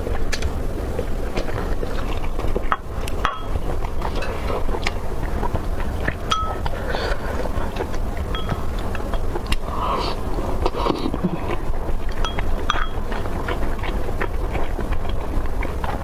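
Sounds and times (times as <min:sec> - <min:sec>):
steady low rumble: 0:00.0 - 0:16.0
tableware clicks and clinks: 0:06.3 - 0:06.6, 0:08.3 - 0:08.6, 0:12.2 - 0:13.0.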